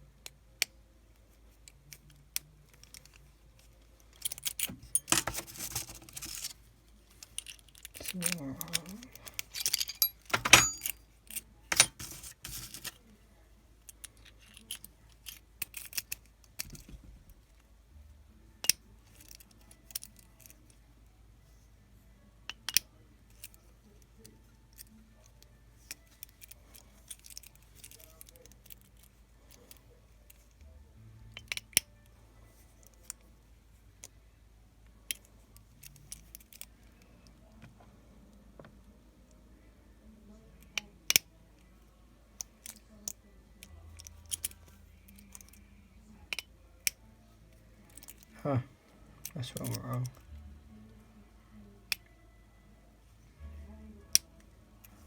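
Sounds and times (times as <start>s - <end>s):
padlock and key clicking: 4.2s - 6.5s, 7.2s - 12.9s.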